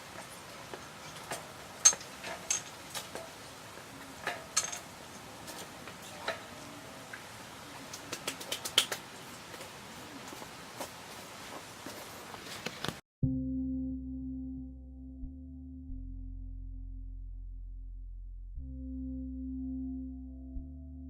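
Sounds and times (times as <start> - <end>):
quick run of ticks: 7.9 - 9.0.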